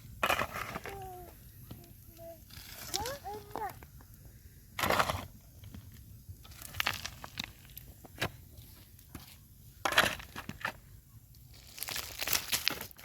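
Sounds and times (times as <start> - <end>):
crunching and crinkling: 0.2 - 4.2, 4.8 - 13.0.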